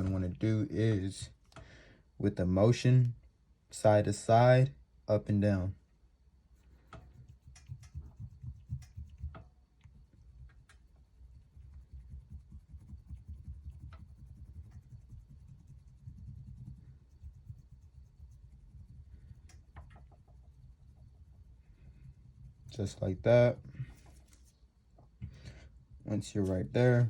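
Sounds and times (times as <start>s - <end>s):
crayon scratching on metal: 6.6s - 9.4s, 10.8s - 23.1s.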